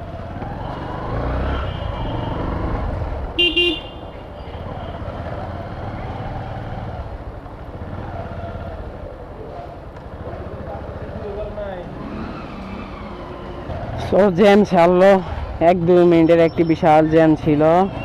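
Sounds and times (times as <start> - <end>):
motorcycle and car engines running: 0.0 - 18.0
vehicle horn honking: 1.4 - 2.6, 3.4 - 4.0.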